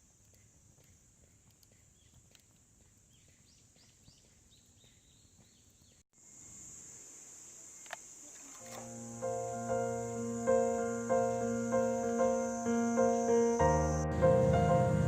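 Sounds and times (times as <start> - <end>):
high-pitched insect chorus: 6.2 - 15.0.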